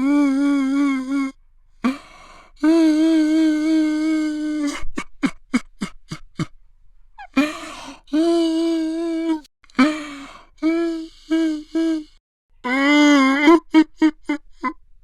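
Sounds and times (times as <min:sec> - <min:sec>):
gasping sobs: 0:00.0 - 0:06.5, 0:07.2 - 0:14.8
man crying and wailing: 0:12.7 - 0:14.8.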